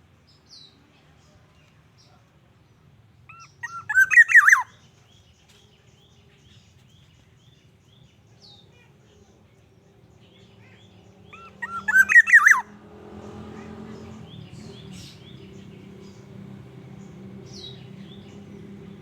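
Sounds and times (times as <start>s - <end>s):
bird whistling fluty notes: 3.6s - 4.7s, 11.4s - 12.6s.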